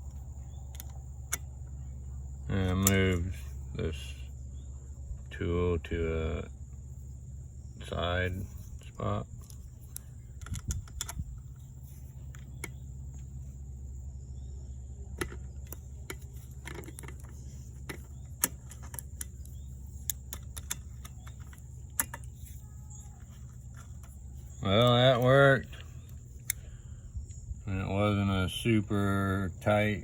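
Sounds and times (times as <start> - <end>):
metallic clicks of wrench on nut: 2.6 - 3.2, 17.9 - 22.6.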